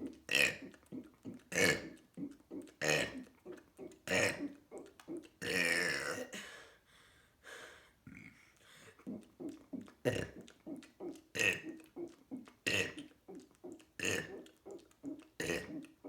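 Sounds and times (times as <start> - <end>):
person burping: 3.8 - 6.4, 9.4 - 11.8, 12.6 - 13.0.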